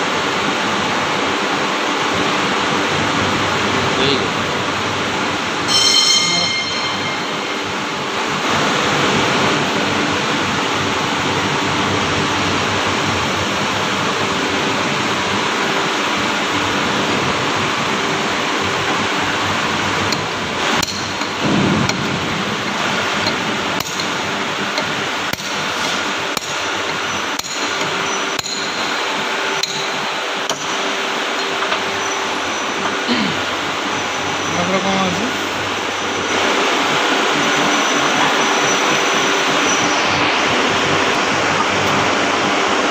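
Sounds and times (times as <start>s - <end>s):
loud workshop noise: 0.0s - 42.9s
hammer blows on metal: 5.7s - 8.2s.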